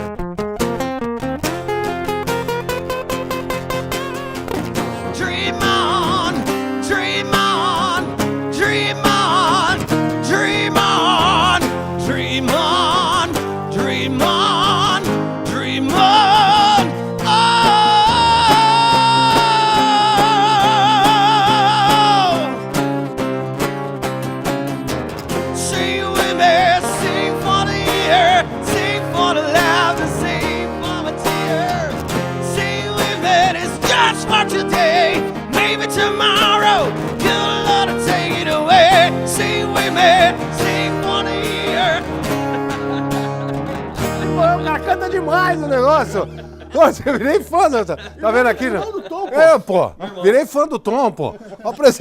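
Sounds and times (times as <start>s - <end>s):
bass guitar: 0.0s - 49.4s
guitar: 0.0s - 52.0s.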